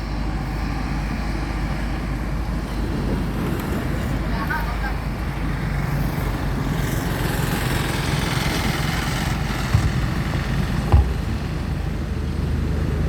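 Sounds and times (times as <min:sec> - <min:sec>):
low engine hum: 0:00.0 - 0:13.0
short thumps: 0:09.3 - 0:12.0.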